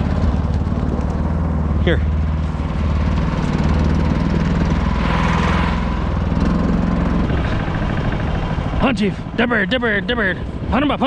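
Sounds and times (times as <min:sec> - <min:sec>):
small engine running: 0:02.6 - 0:09.2.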